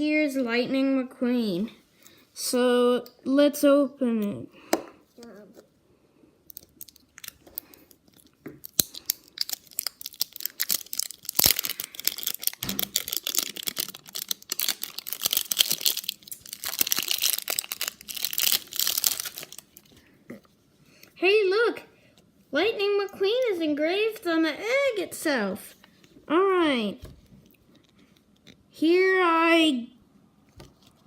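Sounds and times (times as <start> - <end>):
candy wrapper tearing and crinkling: 6.5 - 19.9.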